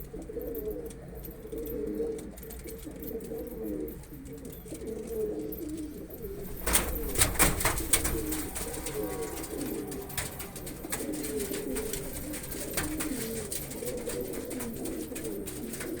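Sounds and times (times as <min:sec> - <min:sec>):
pigeons cooing: 0:00.0 - 0:16.0
sharp clatters: 0:06.3 - 0:16.0.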